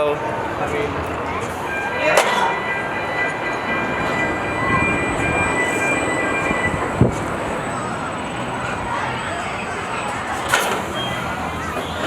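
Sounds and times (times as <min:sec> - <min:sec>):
train rumbling on rails: 0:00.0 - 0:12.0
faint high whine: 0:00.2 - 0:09.8.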